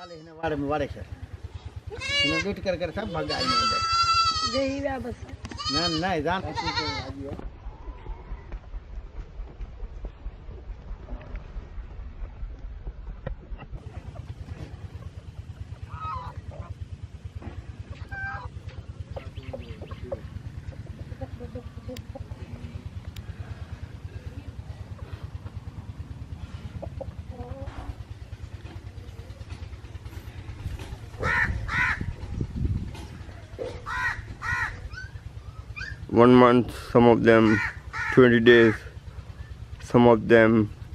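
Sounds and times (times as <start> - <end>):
goats bleating: 0.0 - 0.4, 1.9 - 4.8, 5.4 - 7.3
low steady rumble: 0.0 - 40.9
harsh animal calls: 31.1 - 32.4, 33.2 - 36.1, 37.3 - 39.0.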